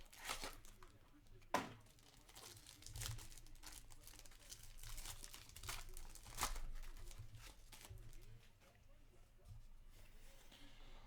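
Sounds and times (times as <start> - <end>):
wrapper crinkling and tearing: 1.9 - 7.9.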